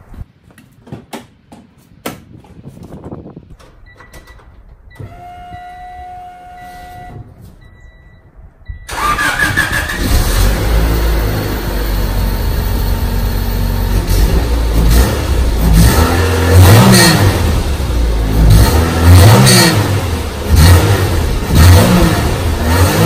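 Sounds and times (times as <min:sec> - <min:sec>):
car engine starting and idling: 0:03.6 - 0:23.0
car engine revving: 0:08.9 - 0:23.0.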